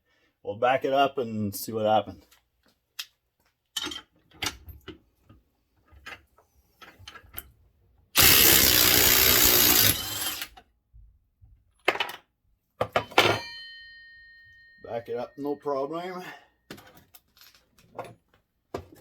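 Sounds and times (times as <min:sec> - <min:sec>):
impact wrench hammering: 0:08.2 - 0:10.5.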